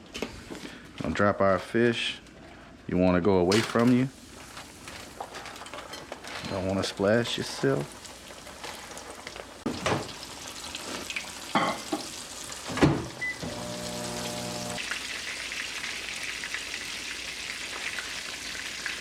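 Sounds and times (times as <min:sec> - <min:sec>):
fish frying in sizzling oil: 0:07.0 - 0:12.8, 0:13.6 - 0:19.0.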